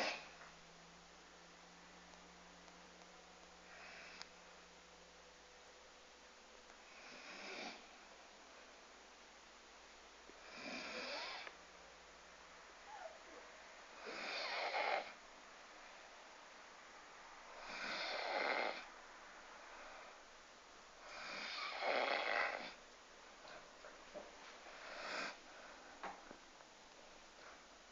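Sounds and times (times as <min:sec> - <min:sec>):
dog snoring: 0:00.0 - 0:00.4, 0:03.7 - 0:04.2, 0:06.9 - 0:08.0, 0:10.4 - 0:11.5, 0:13.9 - 0:15.2, 0:17.5 - 0:18.9, 0:21.0 - 0:22.8, 0:24.7 - 0:25.4.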